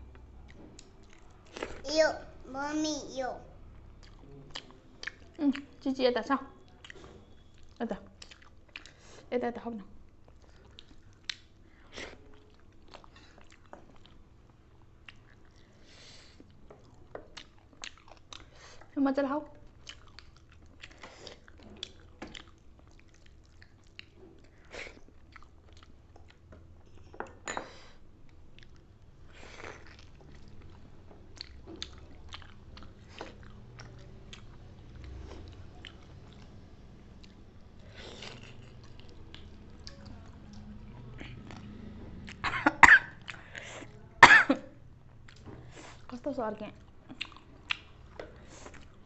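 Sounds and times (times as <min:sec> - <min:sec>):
chewing and biting food: 0:06.6 - 0:09.2, 0:10.2 - 0:19.0, 0:19.6 - 0:26.5, 0:28.5 - 0:42.4, 0:46.7 - 0:49.0
person coughing: 0:42.4 - 0:43.2, 0:44.2 - 0:44.7
mouth clicks and smacks: 0:47.1 - 0:48.0.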